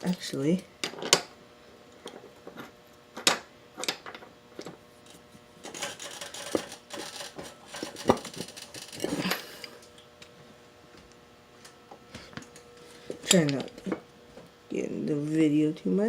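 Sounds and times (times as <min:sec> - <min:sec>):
metal tools clinking and rattling: 0:03.8 - 0:09.7.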